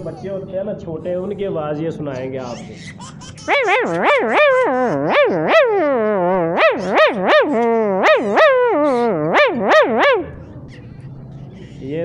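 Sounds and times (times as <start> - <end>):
man imitating puppy whimpering: 2.4 - 10.4.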